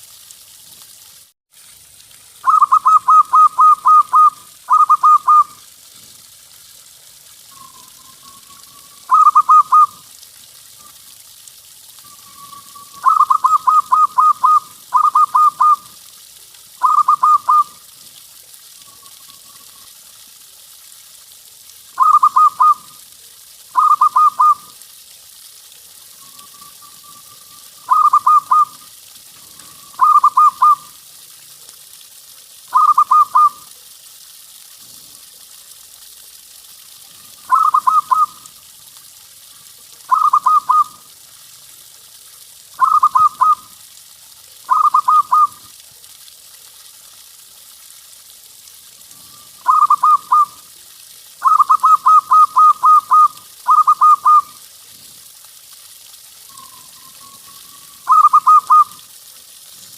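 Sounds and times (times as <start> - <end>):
steady hiss: 0.0 - 59.9
dove cooing: 2.5 - 5.5, 9.1 - 10.0, 12.3 - 15.9, 16.8 - 17.7, 22.0 - 22.8, 23.8 - 24.6, 27.9 - 28.8, 29.6 - 30.9, 32.7 - 33.6, 37.5 - 38.3, 40.1 - 40.9, 44.7 - 45.6, 49.6 - 50.5, 51.4 - 54.5, 58.1 - 59.0.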